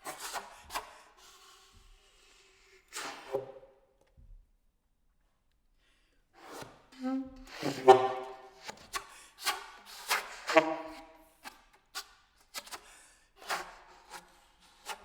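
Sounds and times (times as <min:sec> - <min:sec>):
solo saxophone honks and squeals: 0:07.6 - 0:08.5, 0:10.5 - 0:11.0.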